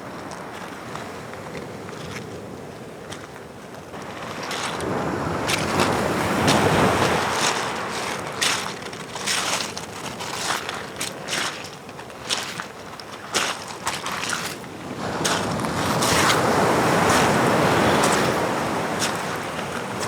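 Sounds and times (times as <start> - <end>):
footsteps crunching on beach: 0.0 - 20.0
ocean wave breaking on shore: 4.0 - 9.1, 14.8 - 20.0.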